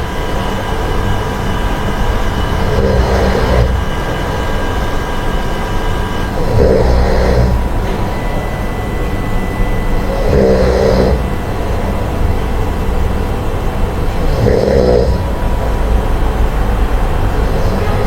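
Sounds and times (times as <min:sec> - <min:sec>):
person snoring: 0:02.4 - 0:03.9, 0:06.3 - 0:07.7, 0:10.0 - 0:11.4, 0:14.2 - 0:15.4.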